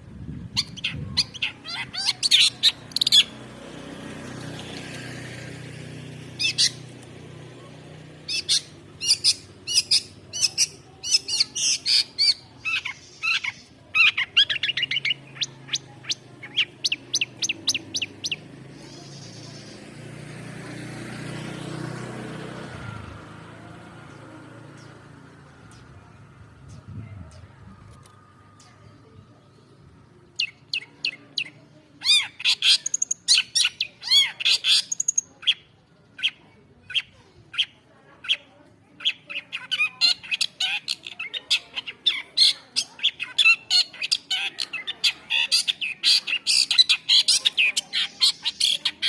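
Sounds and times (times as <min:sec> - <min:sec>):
bird chirping in fast runs: 0:00.5 - 0:03.4, 0:08.3 - 0:19.9.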